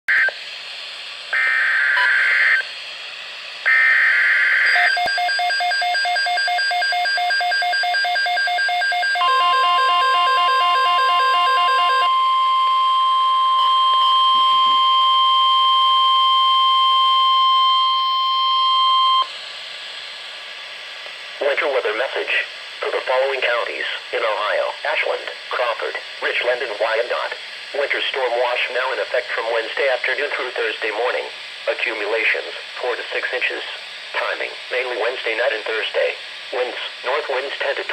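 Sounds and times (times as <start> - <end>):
steady warning tone: 3.6 - 19.3
rapidly pulsing beep alarm: 3.7 - 19.3.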